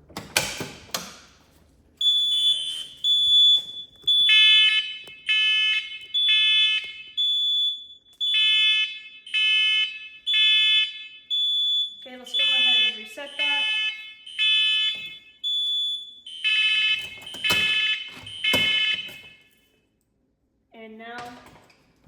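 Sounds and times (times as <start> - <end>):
shrill high alarm beep: 2.0 - 19.4
lower harsh alarm beeping: 2.0 - 19.5.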